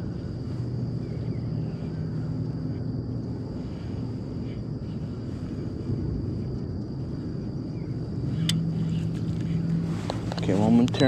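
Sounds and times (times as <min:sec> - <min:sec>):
faint high-pitched whine: 0:00.0 - 0:11.0
low engine drone: 0:00.0 - 0:11.0
wind-like rush: 0:00.0 - 0:11.0.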